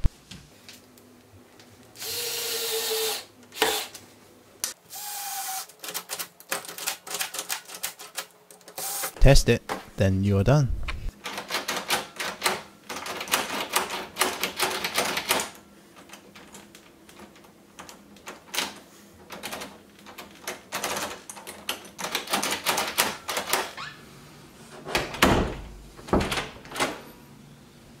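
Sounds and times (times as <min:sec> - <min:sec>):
door thudding shut against frame: 0:25.0 - 0:26.7.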